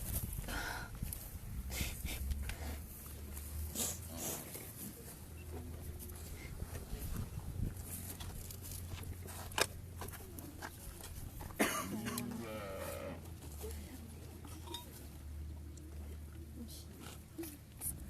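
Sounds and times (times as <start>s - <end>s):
calf bawling: 12.0s - 13.2s.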